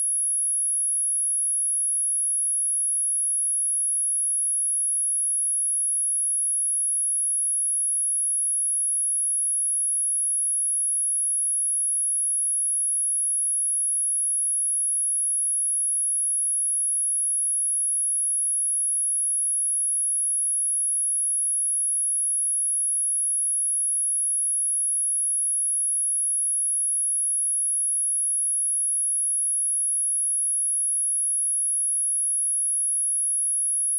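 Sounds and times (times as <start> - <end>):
high-pitched sine-wave test tone: 11.2 - 33.9.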